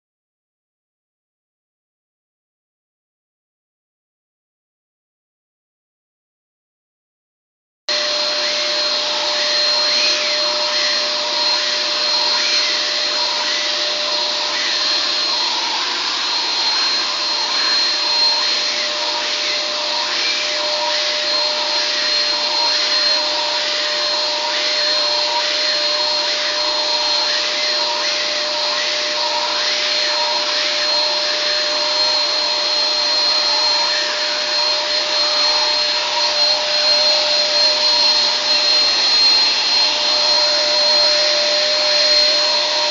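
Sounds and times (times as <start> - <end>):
high whine: 7.9 - 42.9
vacuum cleaner running: 7.9 - 42.9.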